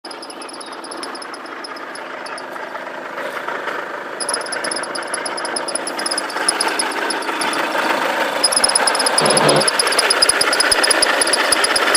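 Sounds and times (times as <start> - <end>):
fast high-pitched ticking: 0.0 - 2.5, 4.2 - 11.9
diesel engine running: 0.1 - 11.9.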